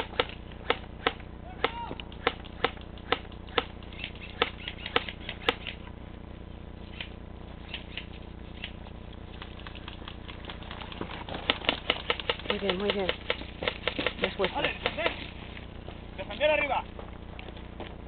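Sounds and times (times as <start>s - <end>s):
airsoft gun shots: 0.0s - 5.8s.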